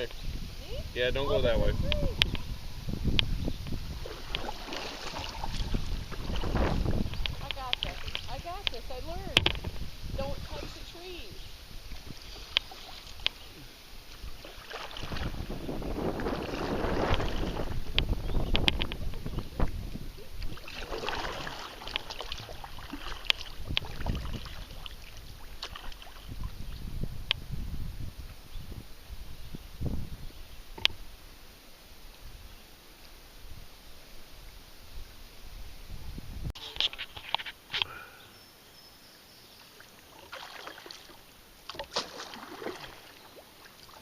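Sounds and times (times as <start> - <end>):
wind on microphone: 0.0 - 31.2, 33.4 - 37.9
paddle splashing water: 3.2 - 26.9, 39.5 - 44.0
sharp clicks and knocks: 7.1 - 9.7.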